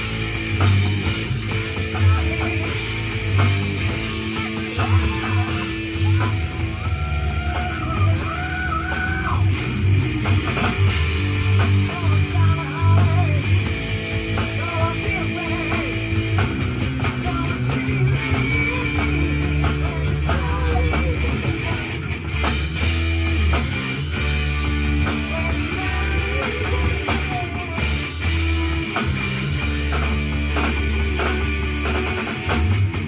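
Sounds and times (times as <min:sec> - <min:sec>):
drum kit playing: 0:00.0 - 0:33.0
guitar-driven rock music: 0:00.0 - 0:33.0.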